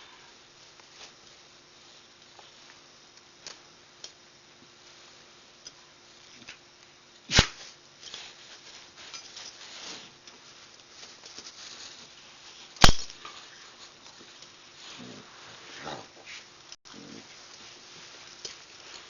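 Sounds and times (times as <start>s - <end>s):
dog sneezing: 7.3s - 7.6s
soft rustling: 7.7s - 19.0s.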